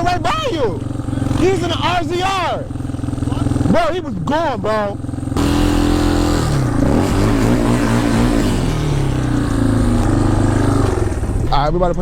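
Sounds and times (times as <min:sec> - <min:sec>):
engines idling and revving: 0:00.0 - 0:12.0.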